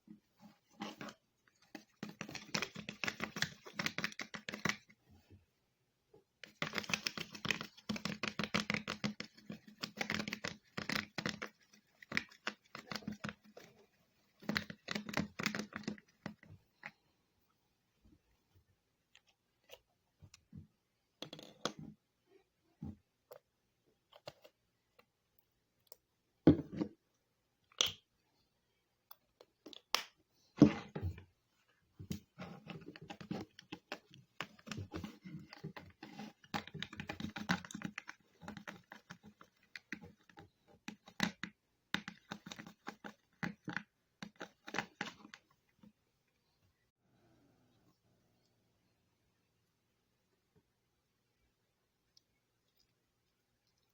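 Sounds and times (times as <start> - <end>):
clicks taps and scrapes: 0.0 - 5.4, 6.3 - 17.2, 32.0 - 46.0.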